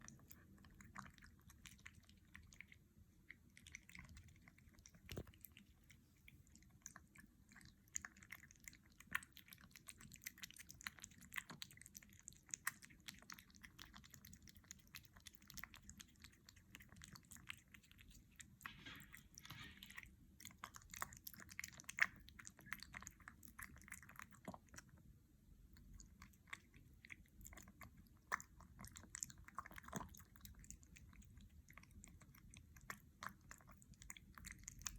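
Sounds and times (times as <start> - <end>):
kitten chewing wet food: 0.0 - 34.9.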